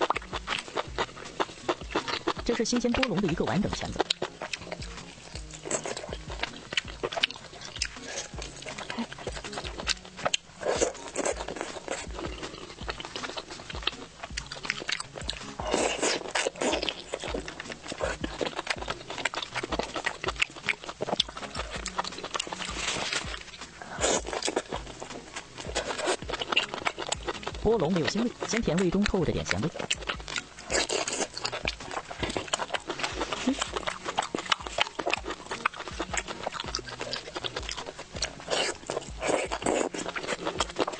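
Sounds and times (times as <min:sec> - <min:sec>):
wet chewing and smacking: 0:00.0 - 0:40.9.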